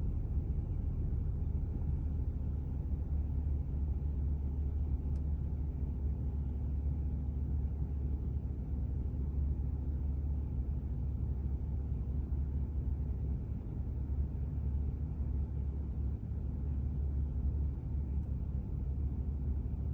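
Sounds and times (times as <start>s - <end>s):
low engine rumble: 0.0s - 19.9s.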